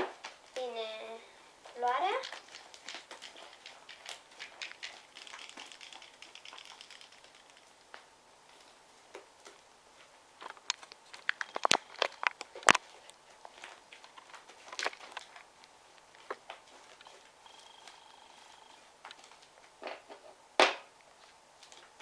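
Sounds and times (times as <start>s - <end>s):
slime crackling and popping: 1.8s - 9.6s, 10.4s - 17.1s.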